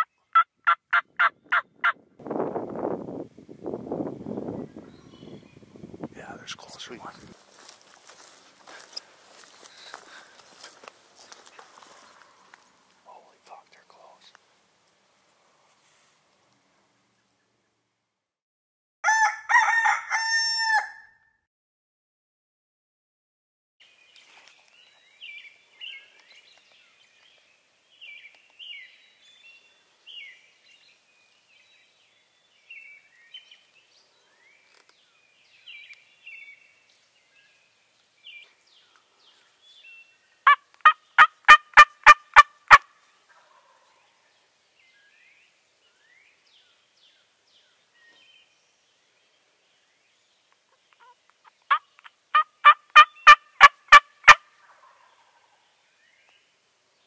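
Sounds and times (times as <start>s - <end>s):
turkey gobbling: 0.0s - 2.0s, 40.5s - 42.8s, 51.0s - 55.4s
faint songbird chirps: 4.2s - 7.0s, 43.3s - 52.2s.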